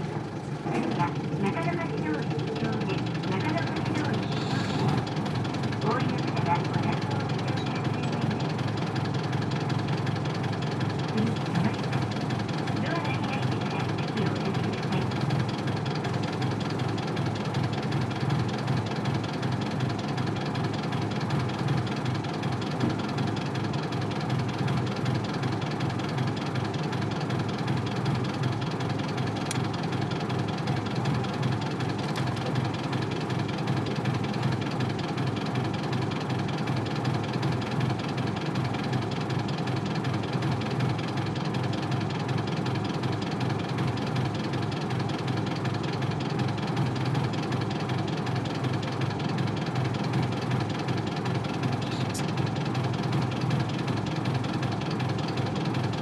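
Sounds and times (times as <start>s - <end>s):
bus diesel engine running: 0.0s - 56.0s.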